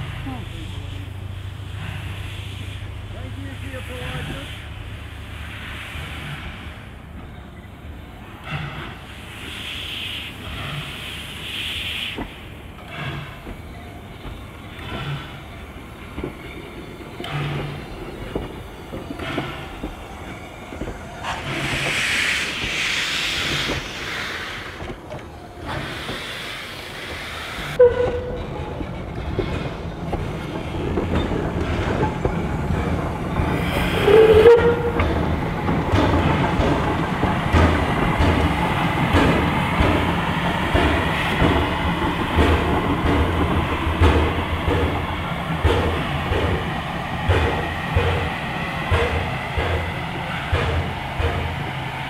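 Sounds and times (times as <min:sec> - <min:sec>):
steam hissing: 0:00.0 - 0:07.1, 0:08.0 - 0:28.0, 0:30.2 - 0:52.0
steam train exhaust beat: 0:08.2 - 0:25.0, 0:30.1 - 0:52.0.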